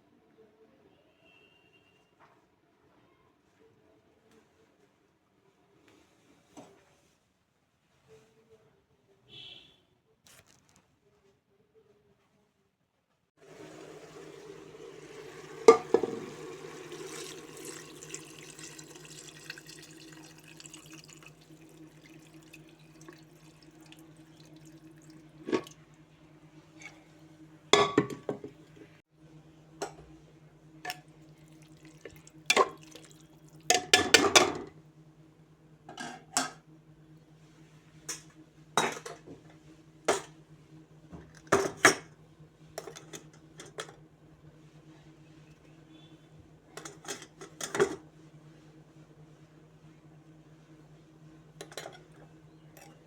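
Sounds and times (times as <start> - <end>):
pots and utensils clattering: 14.8 - 25.8, 27.8 - 28.8, 32.5 - 34.7.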